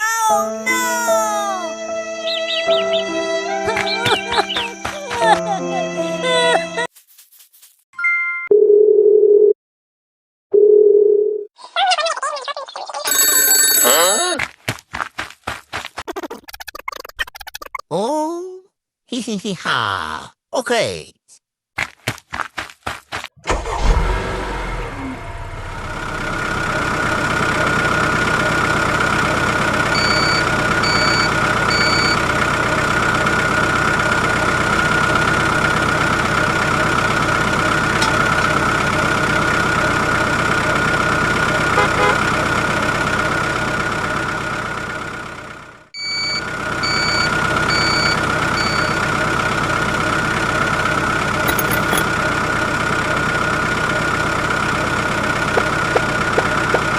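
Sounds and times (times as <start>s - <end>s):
vehicle engine whining: 23.4s - 56.9s
reversing beeps: 30.0s - 32.2s, 46.0s - 49.0s.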